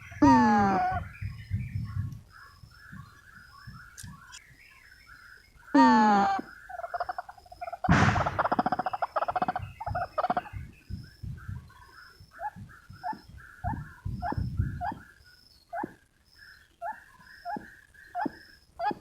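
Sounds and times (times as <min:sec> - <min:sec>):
waterhens calling: 0:00.0 - 0:01.1, 0:05.7 - 0:10.6.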